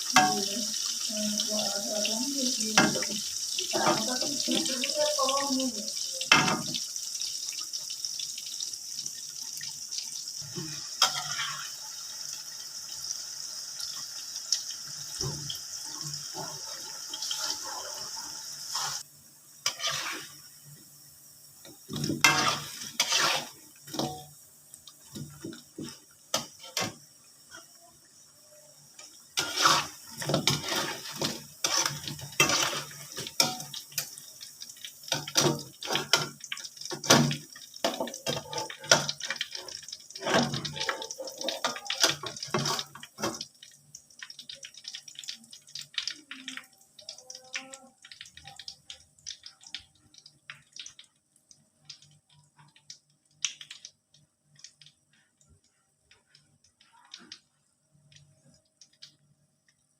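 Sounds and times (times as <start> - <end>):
water dripping: 0.0 - 59.9
water splashing in a basin: 29.0 - 59.2.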